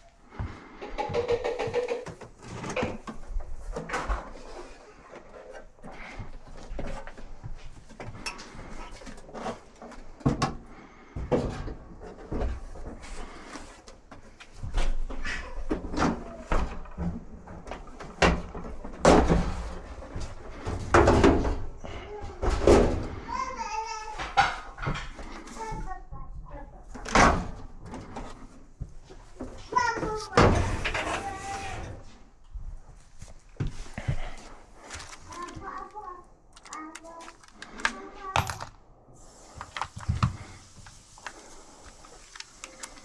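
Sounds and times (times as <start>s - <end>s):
knocks and clunks of dryer parts: 14.0s - 23.3s.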